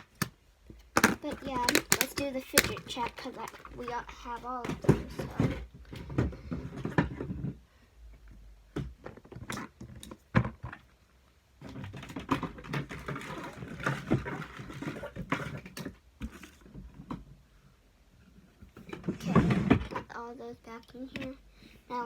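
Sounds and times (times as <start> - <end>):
toys clicking and knocking: 0.0 - 7.2.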